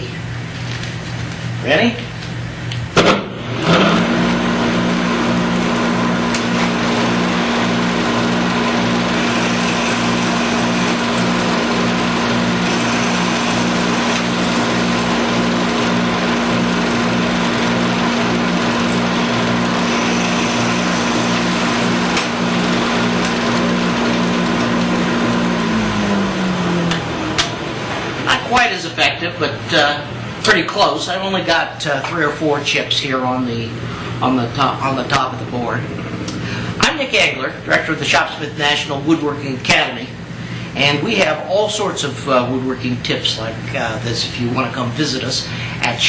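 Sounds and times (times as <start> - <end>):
dust collection vacuum: 0.0 - 46.0
drill press running: 2.2 - 28.8.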